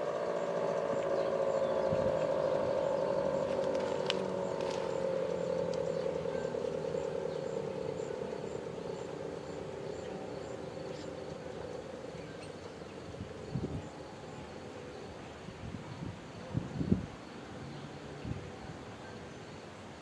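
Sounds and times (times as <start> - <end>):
warning siren winding down: 0.0 - 12.2.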